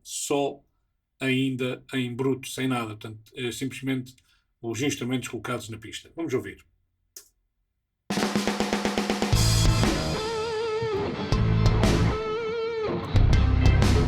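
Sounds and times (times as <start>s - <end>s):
drum kit: 8.1s - 14.0s
bass guitar: 9.3s - 14.0s
electric guitars: 9.4s - 14.0s.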